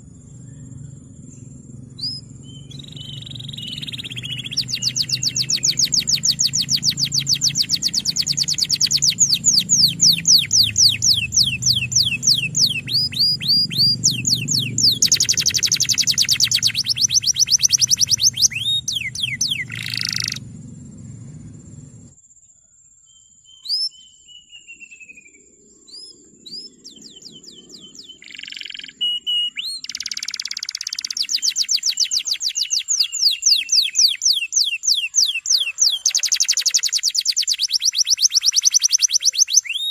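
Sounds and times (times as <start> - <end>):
canary chirps: 0.0 - 22.1, 23.2 - 39.9
canary singing trills: 0.0 - 22.1, 23.1 - 39.9
low background hum: 0.0 - 22.4.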